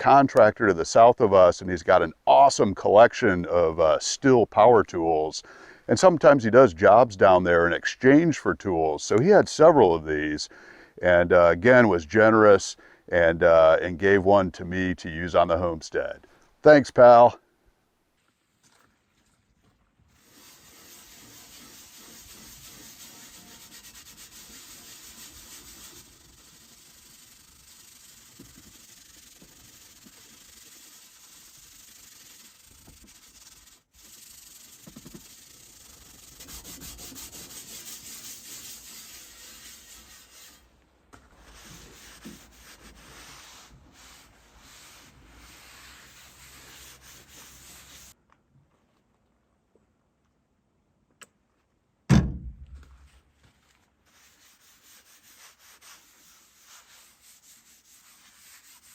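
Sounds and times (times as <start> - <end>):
steel wool scrubbing metal: 20.1 - 40.7, 41.3 - 48.2, 54.1 - 58.9.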